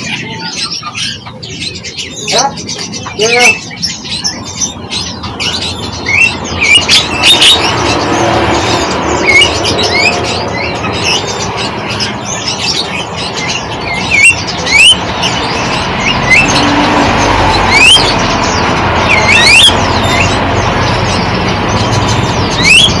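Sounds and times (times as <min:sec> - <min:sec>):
small birds chirping: 0:00.0 - 0:23.0.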